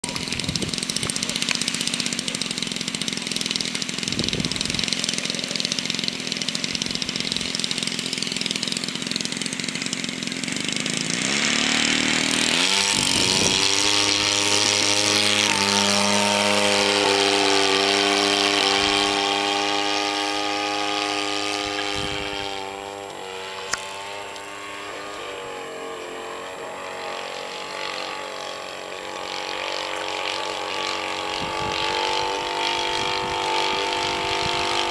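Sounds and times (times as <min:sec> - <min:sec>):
light aircraft engine revving: 0:00.0 - 0:34.9.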